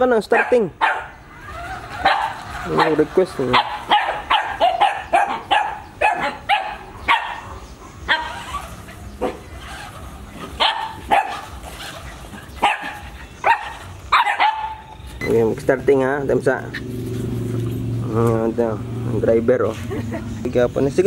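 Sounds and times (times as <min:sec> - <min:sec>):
dog barking: 0:00.3 - 0:01.2, 0:02.0 - 0:08.6, 0:10.6 - 0:11.5, 0:12.6 - 0:14.9.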